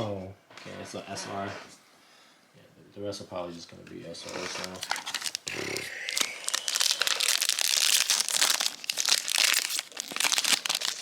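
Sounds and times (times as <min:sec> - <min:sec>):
foil wrappers crinkling: 0:04.3 - 0:11.0.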